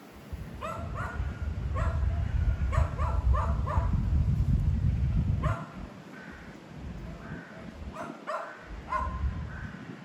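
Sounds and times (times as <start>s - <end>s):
wind buffeting microphone: 0.3s - 10.0s
dog barking: 0.6s - 4.0s, 5.4s - 5.8s, 7.9s - 9.3s.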